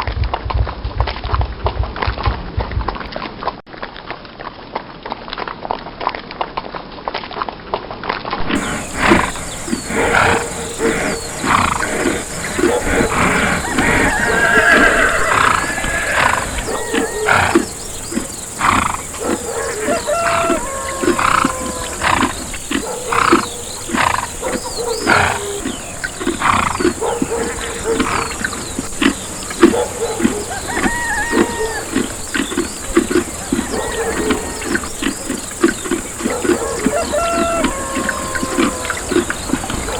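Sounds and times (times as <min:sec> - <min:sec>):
horses neighing: 0:08.4 - 0:39.9.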